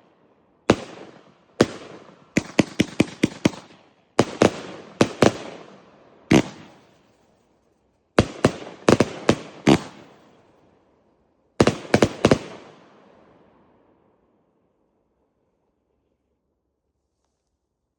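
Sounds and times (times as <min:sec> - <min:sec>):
firework bangs with echo: 0:06.3 - 0:06.8, 0:08.2 - 0:10.2, 0:11.6 - 0:12.8.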